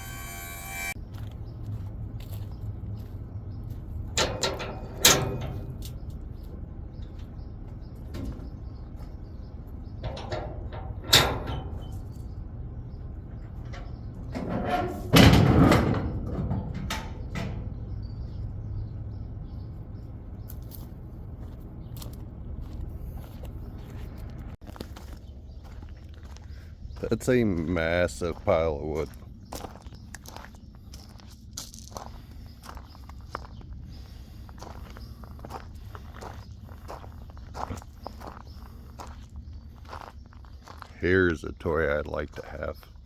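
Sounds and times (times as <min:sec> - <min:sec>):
loud bangs and clunks: 0:04.1 - 0:05.9, 0:10.0 - 0:12.3, 0:13.2 - 0:18.4.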